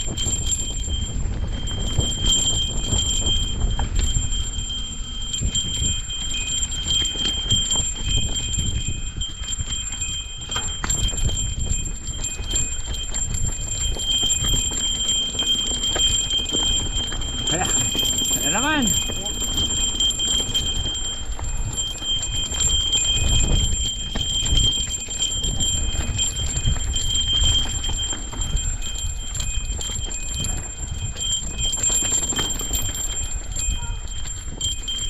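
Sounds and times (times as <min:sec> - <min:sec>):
low wind rumble: 0:00.0 - 0:31.9
thin high-pitched tones: 0:17.5 - 0:19.4.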